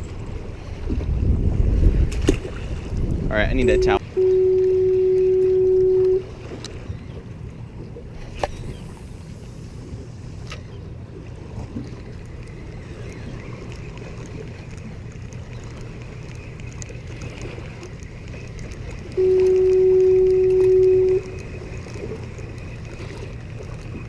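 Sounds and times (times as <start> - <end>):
water noise: 0.0 - 24.0
wind: 0.0 - 24.0
boat motor idling: 3.4 - 11.5, 17.6 - 24.0
loud steady tone: 3.6 - 6.3, 19.1 - 21.5.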